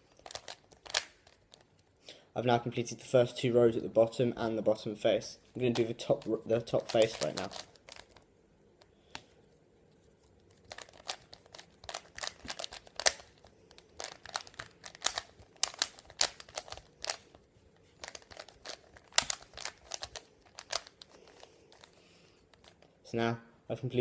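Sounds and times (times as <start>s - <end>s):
plastic puzzle cube clicking: 0.2s - 1.7s, 6.8s - 8.2s, 10.7s - 17.4s, 18.0s - 21.9s.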